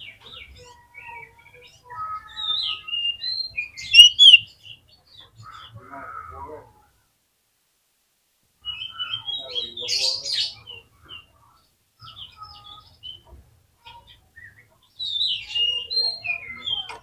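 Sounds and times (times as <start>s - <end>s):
songbird whistling and chattering: 2.2s - 4.5s.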